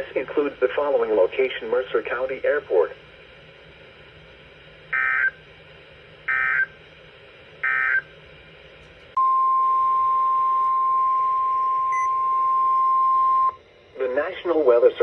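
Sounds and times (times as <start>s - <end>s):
steady warning alarm tone: 4.9s - 5.4s, 6.3s - 6.8s, 7.6s - 8.1s.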